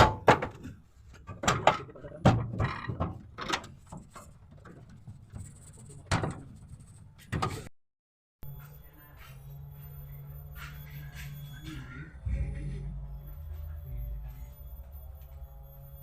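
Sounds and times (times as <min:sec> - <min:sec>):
irregular knocks and clanks: 0:00.0 - 0:06.6.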